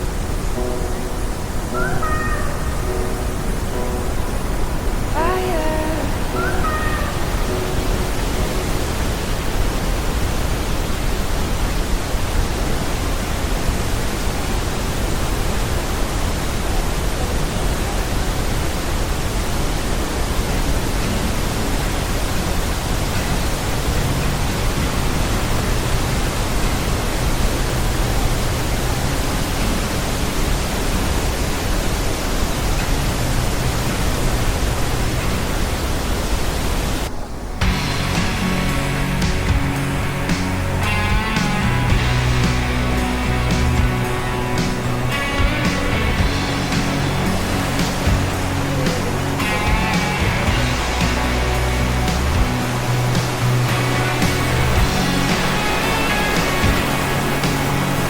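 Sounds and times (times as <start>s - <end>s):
waterfall roar: 0.0s - 58.0s.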